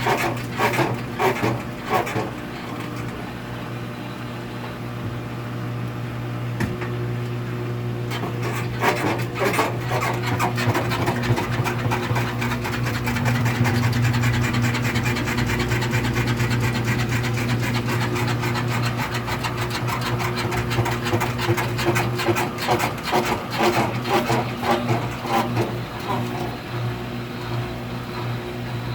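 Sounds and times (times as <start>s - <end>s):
rapid rubbing squeak: 8.1s - 26.5s.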